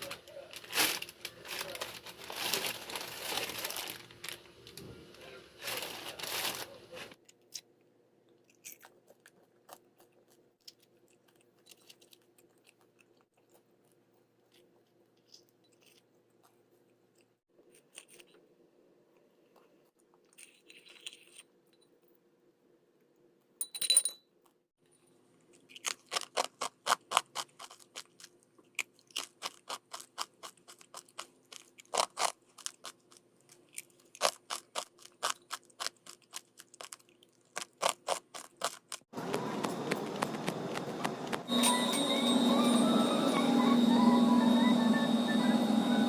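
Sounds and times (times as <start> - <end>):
person chewing crunchy food: 7.4 - 18.5, 25.2 - 41.6.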